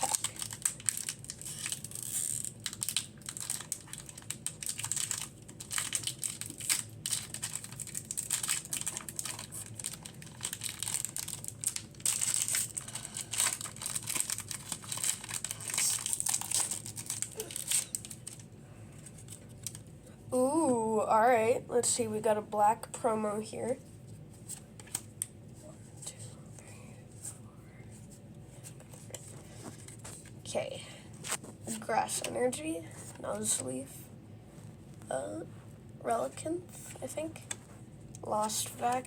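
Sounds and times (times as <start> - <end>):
foil wrapper crinkling and tearing: 0.0 - 19.8.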